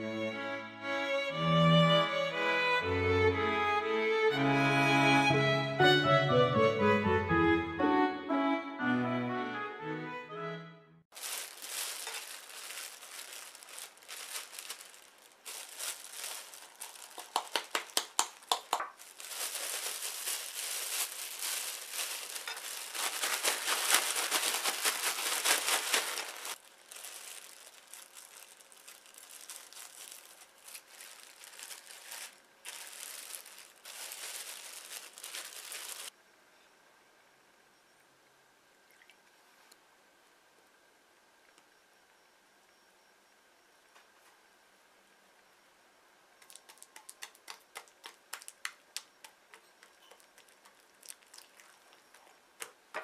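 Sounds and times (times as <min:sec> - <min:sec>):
food packaging crinkling: 0:11.1 - 0:36.1, 0:46.4 - 0:53.0.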